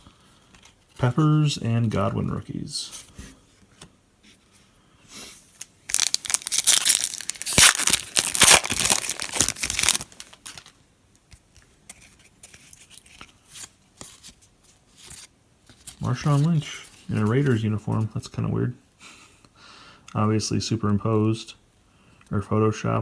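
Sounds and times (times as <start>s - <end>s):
foil wrapper tearing and crinkling: 5.9s - 10.8s.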